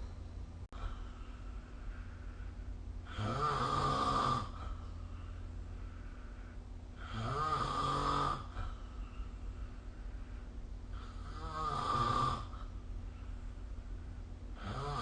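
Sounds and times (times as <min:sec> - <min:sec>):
steady low hum: 0:00.0 - 0:15.0
person snoring: 0:03.0 - 0:04.8, 0:07.0 - 0:08.7, 0:10.9 - 0:12.7, 0:14.6 - 0:15.0.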